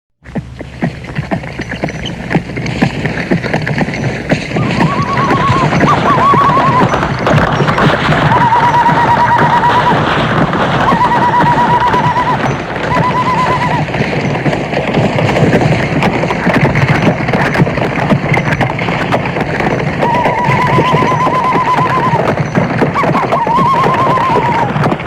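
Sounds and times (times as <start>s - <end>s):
horses galloping: 0.2s - 25.0s
dense clattering din: 1.0s - 8.8s
sharp cracks: 1.0s - 25.0s
war-whoop ululation cries: 4.6s - 7.0s, 8.2s - 10.1s, 10.8s - 13.9s, 20.0s - 22.3s, 23.0s - 24.8s.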